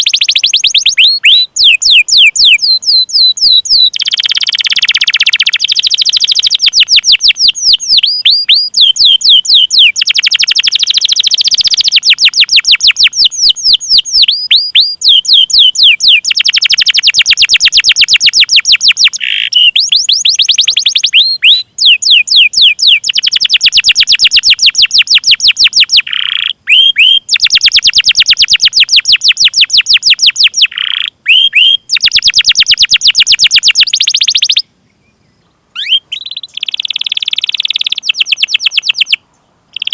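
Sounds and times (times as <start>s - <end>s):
songbird song: 0.0s - 39.9s.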